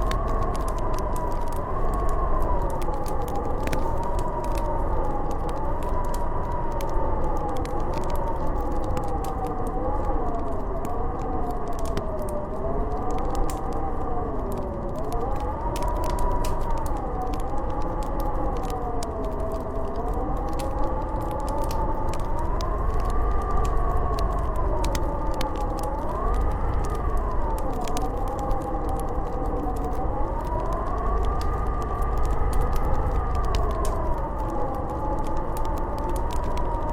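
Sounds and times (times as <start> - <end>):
howling snowstorm wind: 0.0 - 36.9
wood fire crackling: 0.0 - 36.9.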